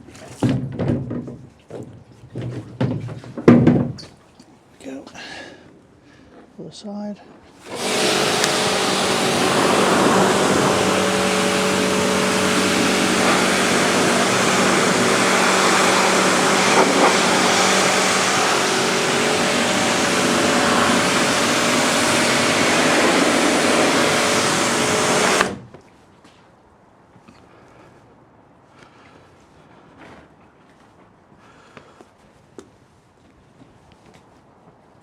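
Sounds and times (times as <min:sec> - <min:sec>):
pressure washer water jet hiss: 0:07.6 - 0:25.6
motor and pump hum: 0:07.6 - 0:25.7.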